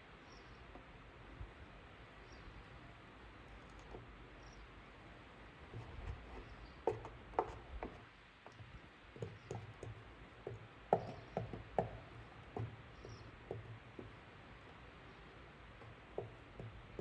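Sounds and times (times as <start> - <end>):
light clicks and taps on plastic: 3.4 - 4.2, 5.7 - 17.0.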